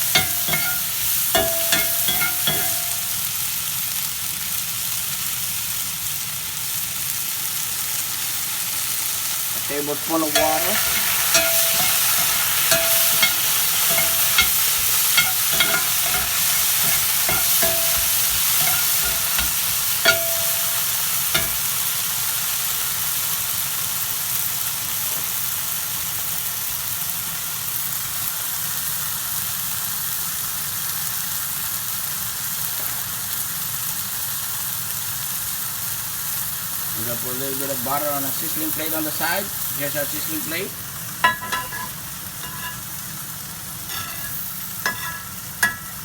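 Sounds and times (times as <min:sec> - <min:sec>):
utensil scraping a pan: 0:00.0 - 0:03.1, 0:10.2 - 0:21.8, 0:41.3 - 0:42.9, 0:43.9 - 0:46.0
vegetables sizzling in a pan: 0:00.0 - 0:46.0.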